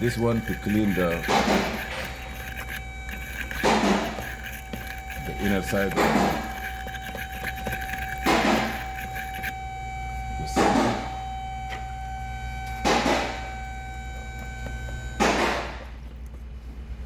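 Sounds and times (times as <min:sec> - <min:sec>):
toothbrush scrubbing metal: 0:00.0 - 0:09.6
steady hum: 0:00.0 - 0:17.0.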